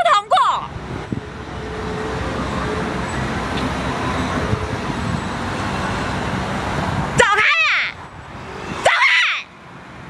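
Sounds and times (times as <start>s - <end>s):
street traffic rumble: 0.0s - 10.0s.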